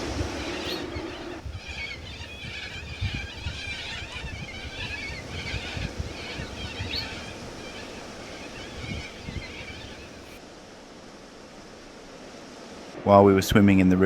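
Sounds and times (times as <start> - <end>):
birds calling harshly: 0.0 - 10.4
wind buffeting microphone: 0.0 - 10.4.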